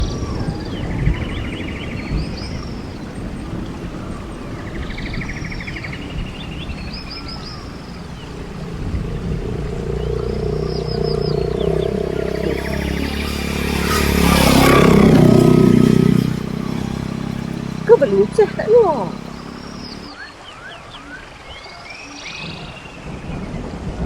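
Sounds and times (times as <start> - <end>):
low engine hum: 0.4 - 20.1
low rumbling noise: 3.6 - 20.1
bird-like trilling song: 4.0 - 21.2.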